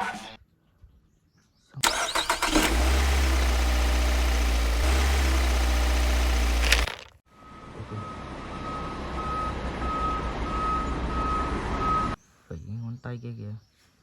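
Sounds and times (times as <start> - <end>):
engine cranking: 1.8 - 7.2
engine running with low drone: 2.1 - 10.7.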